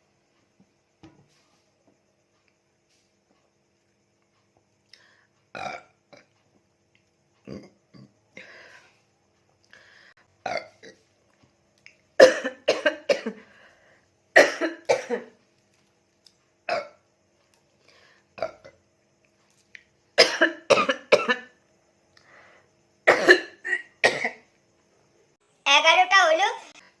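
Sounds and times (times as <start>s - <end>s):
woman coughing: 12.2s - 13.4s, 14.4s - 15.3s, 20.2s - 21.5s, 23.1s - 24.4s.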